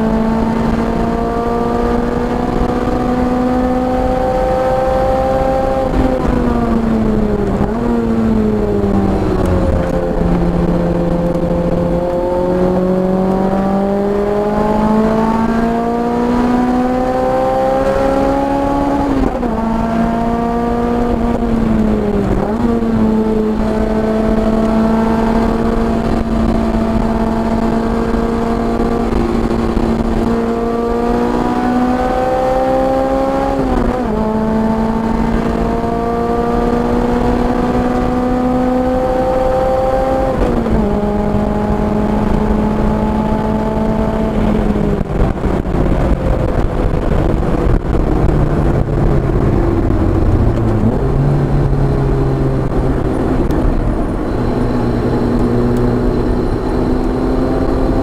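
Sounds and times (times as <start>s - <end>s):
car engine accelerating: 0.0s - 58.0s
wind and road noise: 0.0s - 58.0s.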